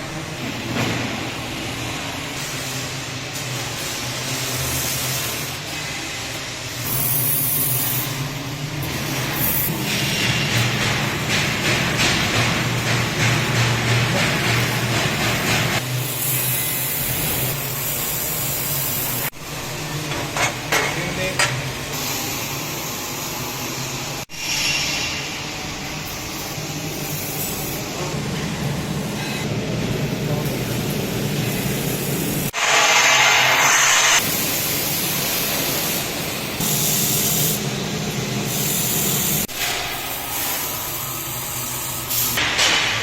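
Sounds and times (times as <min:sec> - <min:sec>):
laser welding machine hissing: 0:01.4 - 0:20.0, 0:21.0 - 0:42.9.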